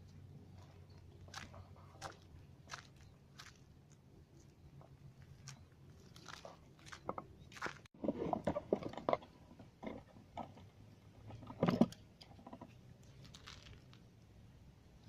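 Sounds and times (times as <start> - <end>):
crunching and rustling: 0.5 - 10.6, 11.2 - 14.2
sharp crackle: 13.0 - 14.1.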